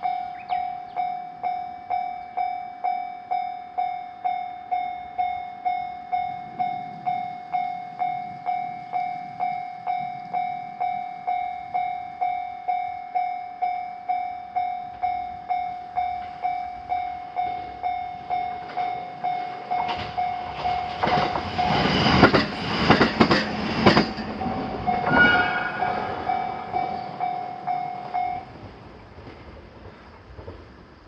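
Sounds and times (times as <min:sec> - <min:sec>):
level crossing warning bell: 0:00.0 - 0:22.4, 0:23.9 - 0:28.9
train wheels clattering over rail joints: 0:17.6 - 0:31.0.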